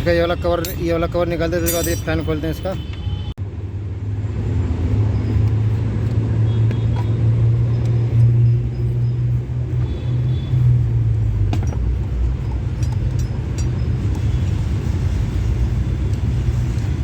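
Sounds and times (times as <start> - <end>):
metallic tool clicks: 1.6 - 2.1, 12.5 - 13.9.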